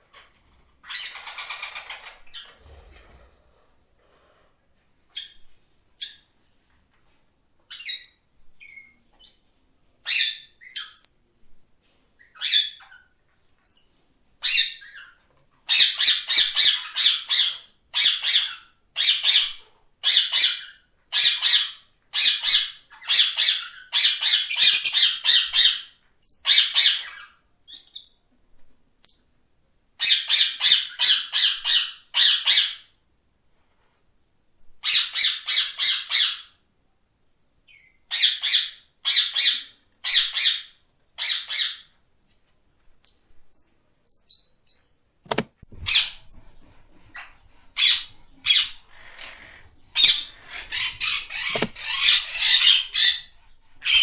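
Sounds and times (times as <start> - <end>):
parrot calling: 47.1 - 54.0.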